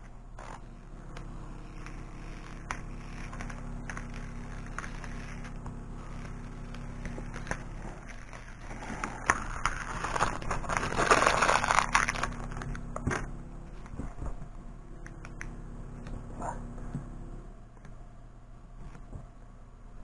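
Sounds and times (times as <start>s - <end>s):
vinyl crackling as it is peeled: 0.0s - 14.4s.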